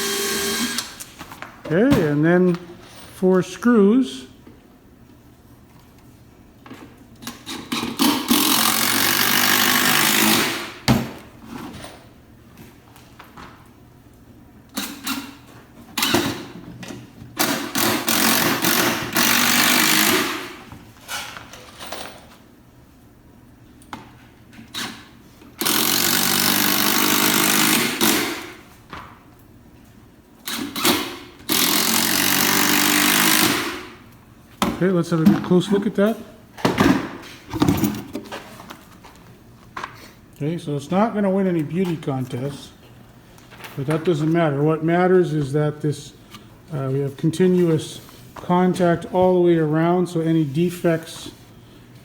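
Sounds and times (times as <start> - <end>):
power driver driving screws into wood: 0.0 - 1.0, 7.7 - 10.9, 17.4 - 20.6, 25.6 - 28.6, 30.5 - 34.0.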